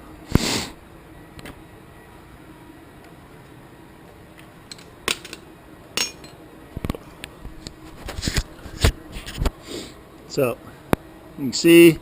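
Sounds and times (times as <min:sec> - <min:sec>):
metal clinks and knocks: 0:06.0 - 0:06.4.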